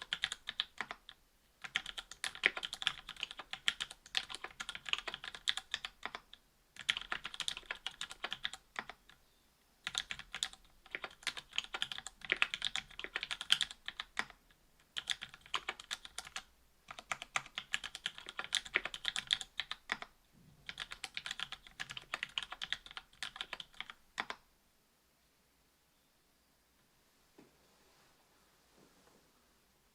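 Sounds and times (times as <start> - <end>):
mechanical keyboard typing: 0.0 - 9.2, 9.8 - 24.4.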